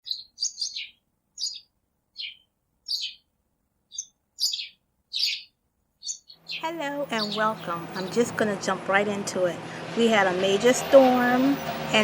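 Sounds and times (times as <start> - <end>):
bird chirping: 0.0 - 3.3, 3.9 - 8.5.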